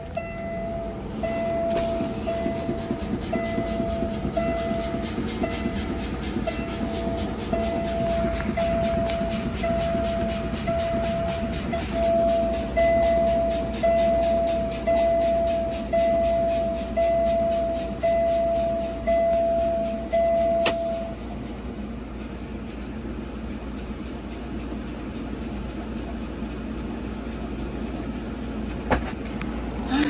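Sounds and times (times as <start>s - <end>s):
vehicle warning chime: 0.0s - 21.2s
steady low hum: 0.0s - 30.0s.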